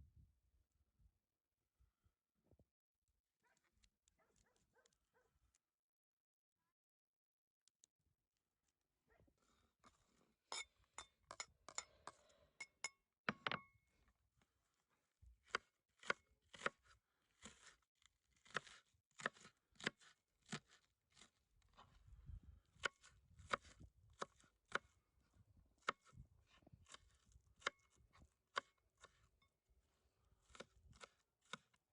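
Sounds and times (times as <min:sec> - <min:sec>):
knife chopping on cutting board: 0:18.4 - 0:21.3, 0:30.4 - 0:31.7.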